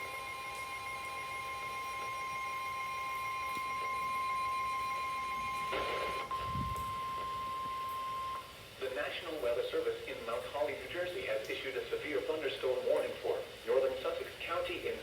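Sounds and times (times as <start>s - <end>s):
steady high alarm tone: 0.0s - 8.6s.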